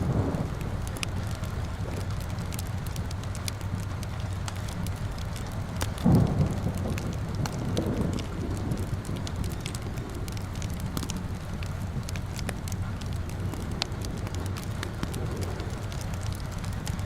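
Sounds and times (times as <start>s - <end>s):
fire crackling with pops: 0.0s - 17.0s
steady rain: 0.0s - 17.0s.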